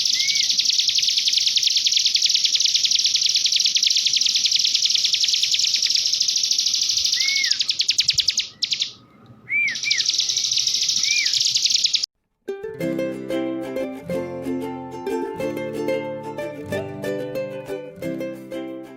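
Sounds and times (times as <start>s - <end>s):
songbird trilling and whistling: 0.0s - 12.1s.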